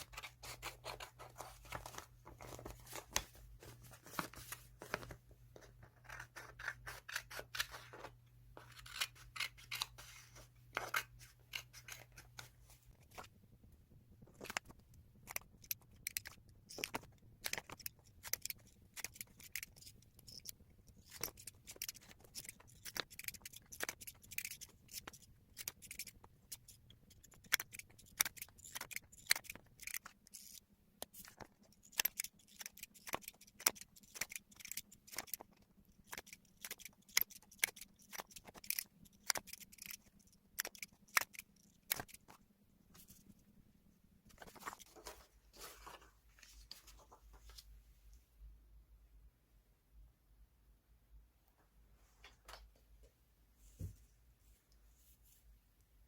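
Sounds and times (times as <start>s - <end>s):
paper rustling: 0.0s - 6.3s, 44.3s - 47.7s
scissors snipping paper: 0.0s - 13.3s, 14.4s - 42.4s.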